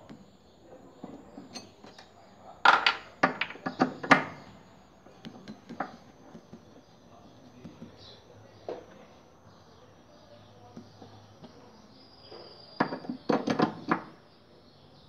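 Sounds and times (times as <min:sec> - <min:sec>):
metal tools clinking: 0:01.4 - 0:01.9.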